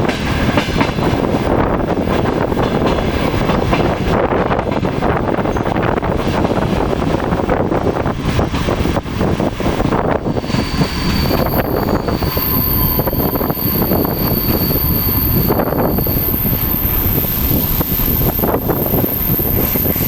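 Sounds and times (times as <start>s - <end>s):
train wheels rumbling on track: 0.0s - 20.0s
high-pitched brake squeal: 10.2s - 20.0s.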